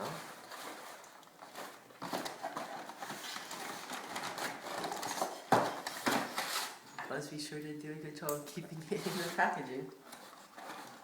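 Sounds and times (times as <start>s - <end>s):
packaging scraping and rustling: 0.0s - 7.1s, 8.8s - 11.0s.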